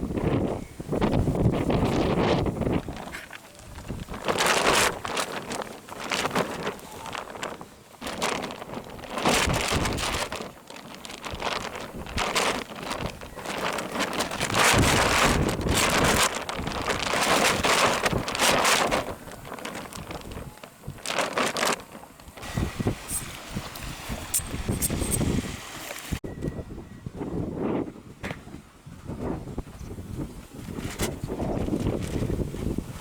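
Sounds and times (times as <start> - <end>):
wind on microphone: 0.0 - 33.0
sea waves washing up beach: 1.6 - 26.2.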